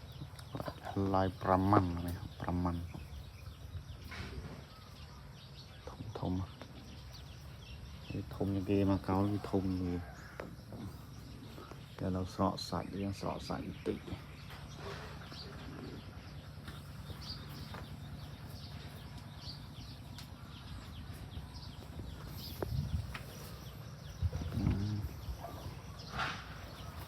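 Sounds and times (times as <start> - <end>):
bird chirps: 0.0 - 27.0
low steady hum: 0.0 - 27.0
low animal call: 14.7 - 27.0.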